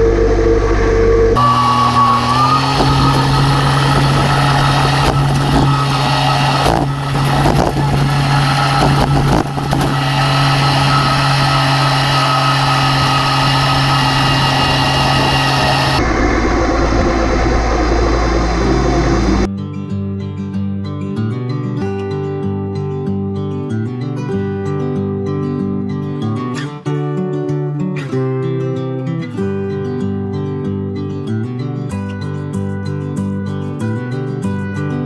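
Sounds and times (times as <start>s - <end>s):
grinding noise: 0.0s - 19.5s
stump grinder engine running: 1.4s - 16.1s.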